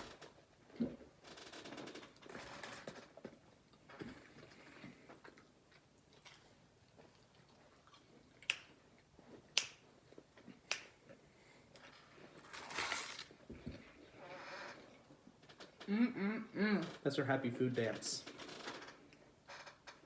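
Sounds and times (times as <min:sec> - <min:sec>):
chewing food: 0:04.2 - 0:13.8.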